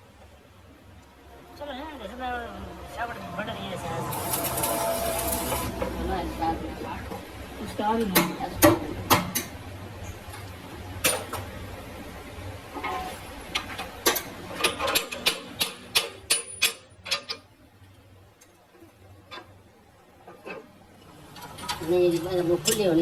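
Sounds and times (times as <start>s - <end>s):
low steady hum: 0.0s - 14.5s.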